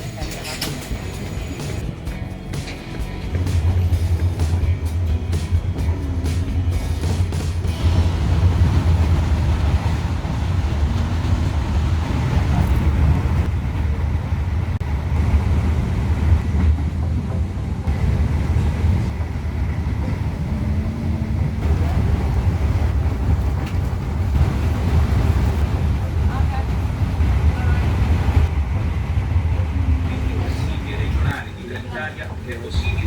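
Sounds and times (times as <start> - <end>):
train rumbling: 0.0 - 33.0
train running hiss: 2.6 - 13.2.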